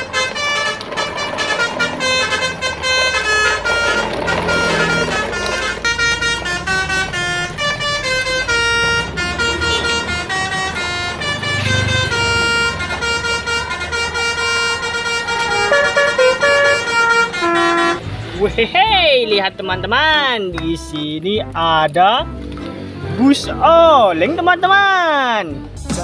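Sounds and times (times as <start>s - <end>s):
musical vehicle horn: 0.0s - 18.1s.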